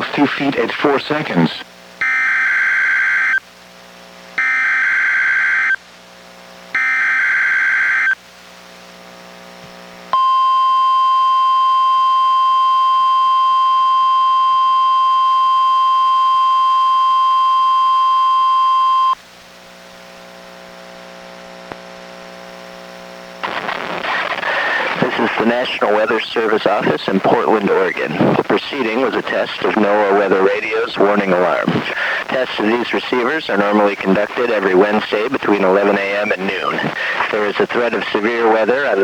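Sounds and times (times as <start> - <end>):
faint hiss and hum: 0.0 - 39.0
steady warning alarm tone: 2.0 - 3.4, 4.4 - 5.8, 6.7 - 8.2, 10.2 - 19.2.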